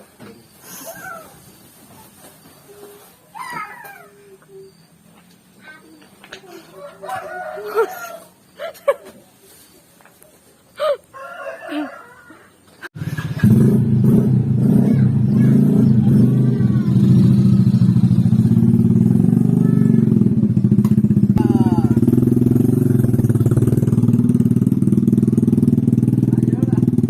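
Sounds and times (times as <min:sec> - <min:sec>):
motorcycle engine running: 0:13.0 - 0:27.0.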